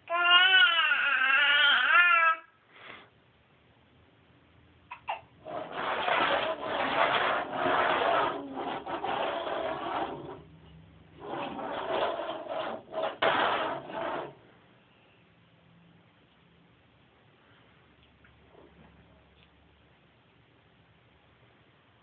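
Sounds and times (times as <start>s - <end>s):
rough rasping scrapes: 5.4s - 10.5s, 11.2s - 14.4s.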